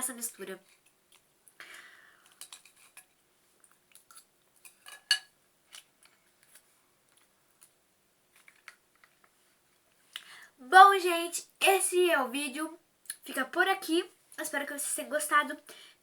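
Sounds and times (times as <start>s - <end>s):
cutlery clicking and scraping dish: 4.1s - 5.3s.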